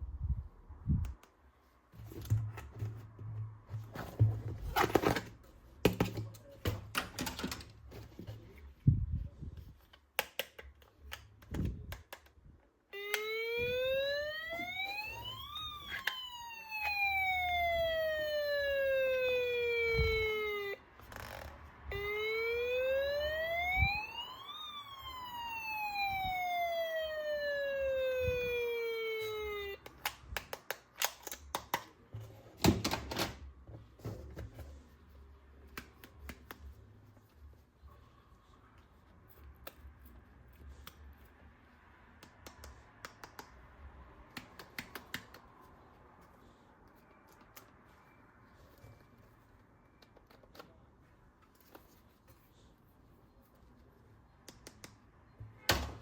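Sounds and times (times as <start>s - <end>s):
toy electronic police siren: 12.9s - 29.9s.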